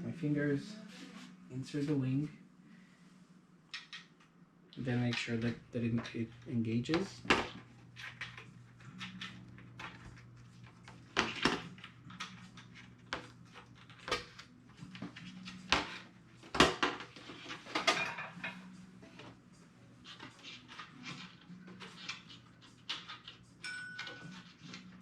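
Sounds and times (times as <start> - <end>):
steady low hum: 0.0 - 16.6.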